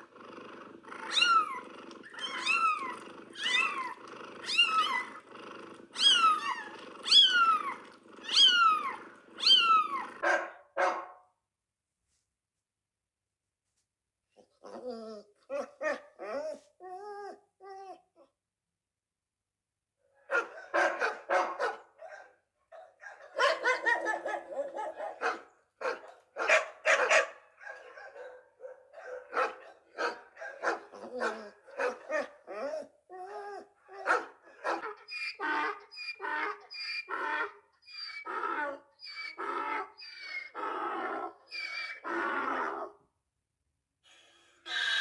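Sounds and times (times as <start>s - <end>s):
dog barking and yipping: 7.1s - 11.2s, 20.3s - 32.9s, 33.9s - 37.1s.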